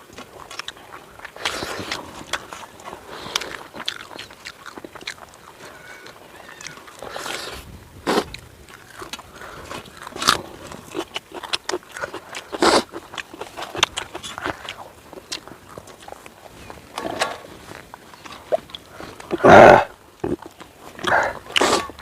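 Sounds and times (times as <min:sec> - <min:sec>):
person chewing and crunching food: 0:00.0 - 0:22.0.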